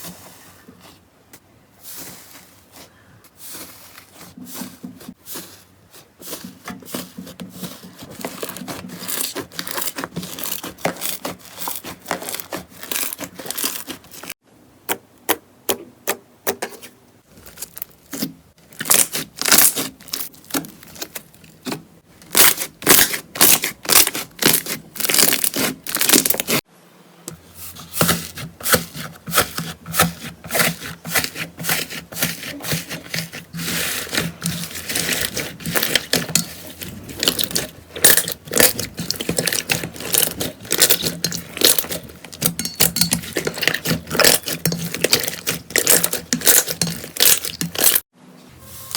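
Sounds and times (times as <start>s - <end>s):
slime crackling and popping: 17.3s - 21.5s, 22.3s - 26.6s, 34.8s - 48.0s.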